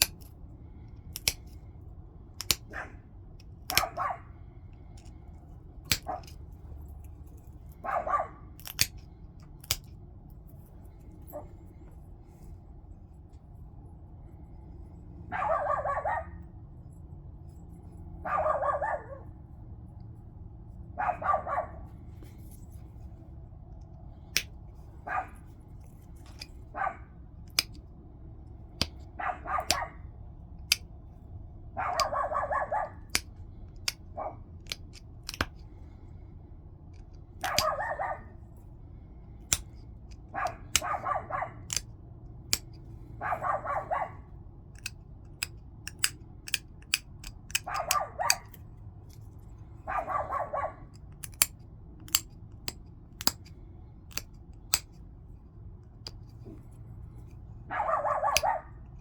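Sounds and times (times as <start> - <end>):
stone flakes clicking off: 1.1 - 1.5, 2.4 - 2.7.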